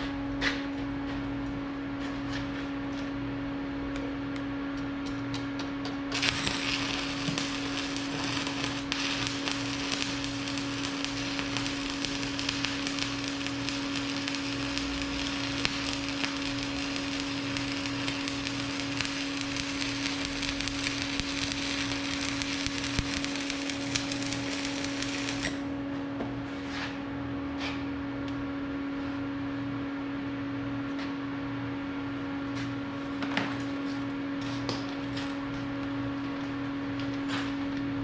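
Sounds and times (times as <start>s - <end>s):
steady hum: 0.0s - 34.4s
welding arc crackling and popping: 6.1s - 25.7s.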